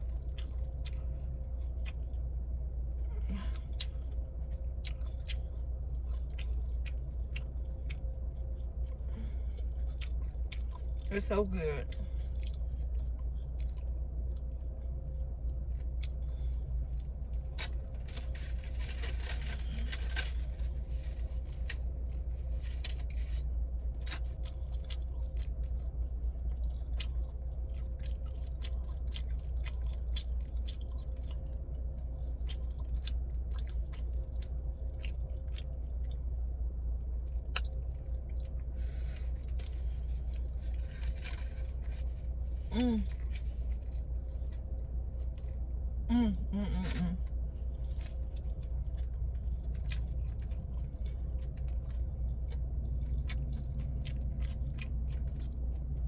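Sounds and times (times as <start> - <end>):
person chewing a sandwich: 0.0 - 11.1, 11.8 - 46.1, 46.8 - 56.0
steady low hum: 0.0 - 56.0
rustling: 17.6 - 24.3, 38.8 - 44.6.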